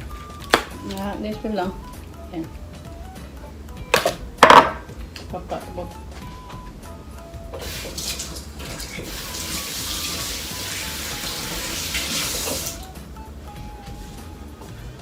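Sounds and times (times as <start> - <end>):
tap running into a sink: 7.5 - 12.8.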